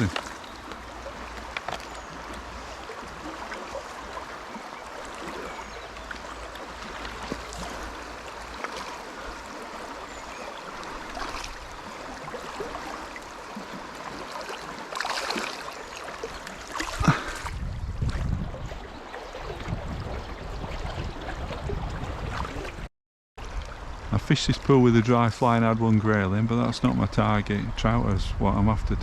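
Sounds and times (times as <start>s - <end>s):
river water rushing over stones: 0.0s - 17.4s.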